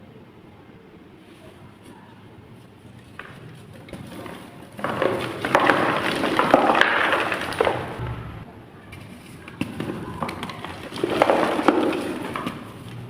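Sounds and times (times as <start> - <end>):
chalk crumbling and crunching: 2.6 - 8.0, 8.9 - 13.0.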